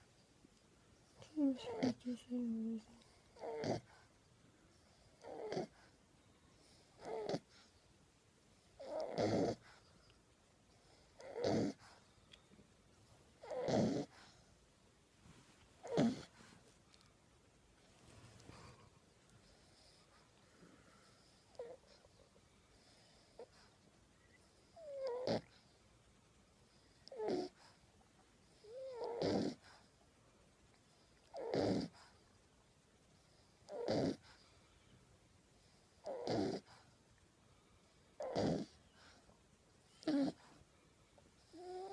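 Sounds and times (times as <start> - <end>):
puppy snoring: 1.1 - 4.1, 4.8 - 6.0, 6.6 - 7.8, 8.6 - 9.9, 10.7 - 12.0, 13.4 - 14.5, 15.8 - 16.8, 18.4 - 25.7, 26.7 - 27.8, 28.5 - 30.0, 30.9 - 32.3, 33.2 - 34.6, 35.6 - 37.0, 38.1 - 39.3, 39.9 - 40.6, 41.4 - 41.9.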